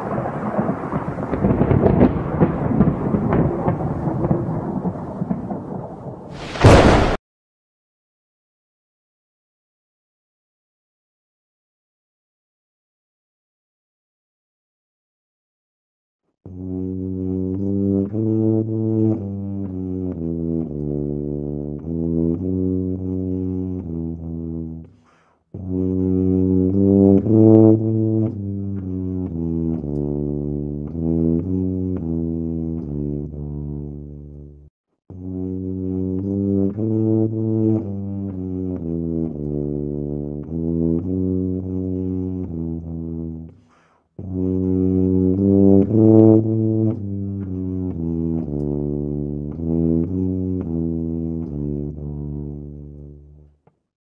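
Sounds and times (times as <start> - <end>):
low brass instrument melody: 16.5 - 53.6.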